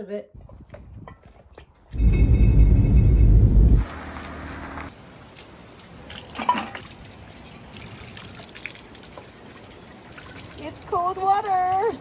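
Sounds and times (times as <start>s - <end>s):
water trickling and dripping: 4.9s - 12.0s.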